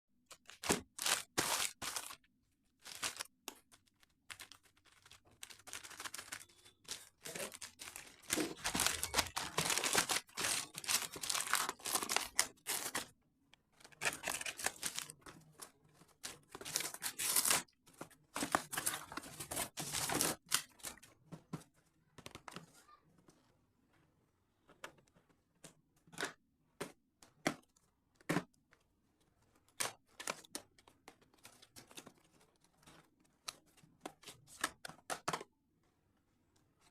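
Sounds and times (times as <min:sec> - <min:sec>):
packaging being torn and crinkled: 0:02.8 - 0:13.1, 0:14.0 - 0:15.2, 0:16.2 - 0:17.7.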